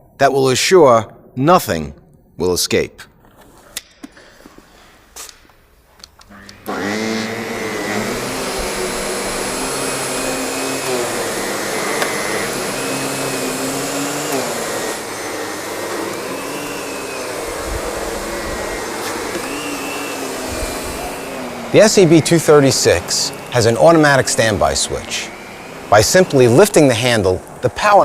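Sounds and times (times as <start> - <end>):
vacuum cleaner running: 6.3 - 28.0.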